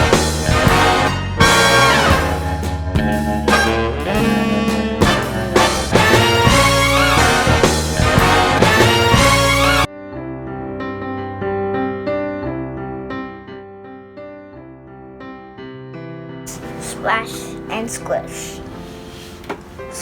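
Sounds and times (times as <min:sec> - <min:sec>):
upbeat music with brass and drums: 0:00.0 - 0:09.9.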